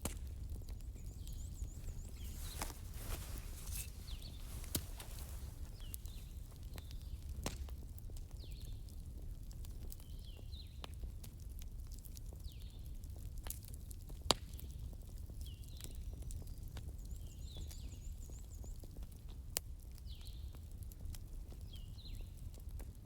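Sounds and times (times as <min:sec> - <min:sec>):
campfire crackling and popping: 0:00.0 - 0:16.0.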